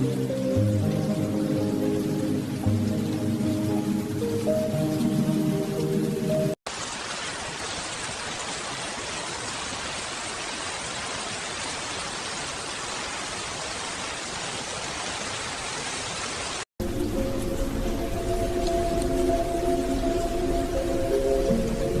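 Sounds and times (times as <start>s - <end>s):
music: 0.0s - 6.6s, 16.8s - 22.0s
heavy rain hissing: 0.0s - 22.0s.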